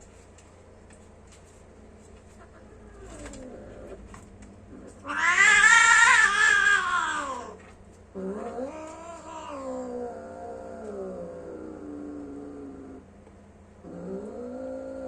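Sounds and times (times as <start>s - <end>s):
cat yowling: 4.8s - 7.6s, 8.3s - 10.9s.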